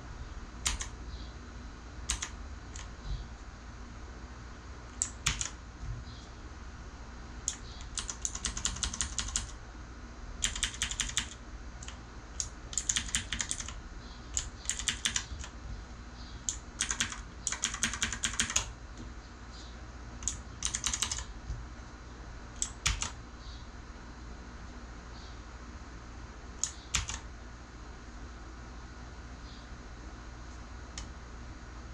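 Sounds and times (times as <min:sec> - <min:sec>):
clicky mechanical keyboard typing: 0:00.6 - 0:01.0, 0:02.1 - 0:02.9, 0:05.0 - 0:05.6, 0:07.5 - 0:09.6, 0:10.4 - 0:15.6, 0:16.5 - 0:18.7, 0:20.2 - 0:21.3, 0:22.6 - 0:23.2, 0:26.6 - 0:27.2.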